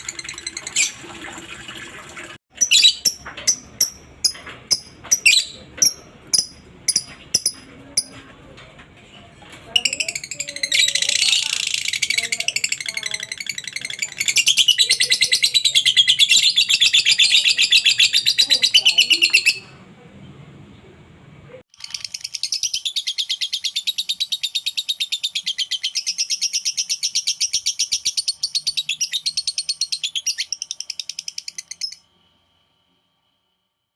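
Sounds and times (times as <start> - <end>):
lovebird chattering trill: 2.6 - 8.1, 9.8 - 19.7.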